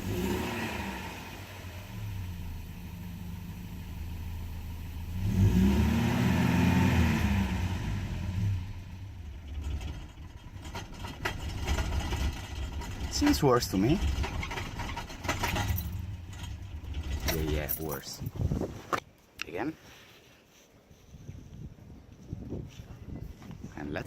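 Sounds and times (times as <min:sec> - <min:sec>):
engine revving: 0:00.0 - 0:18.0
car engine rough idle: 0:01.0 - 0:05.2, 0:08.6 - 0:18.0.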